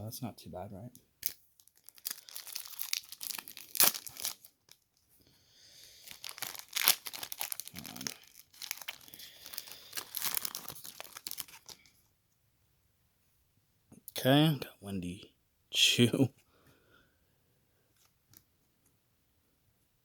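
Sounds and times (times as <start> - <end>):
card pack wrapper crinkling: 1.2 - 5.0, 5.8 - 12.0
wrapper tearing: 1.2 - 5.0, 5.9 - 11.9.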